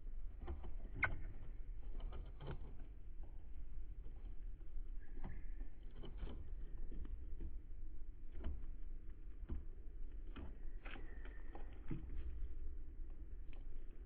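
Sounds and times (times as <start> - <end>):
birds pecking at feeder: 0.2 - 14.0.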